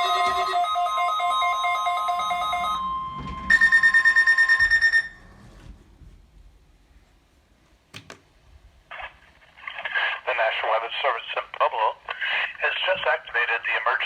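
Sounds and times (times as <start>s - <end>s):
warbling electronic alert tones: 0.0s - 5.2s.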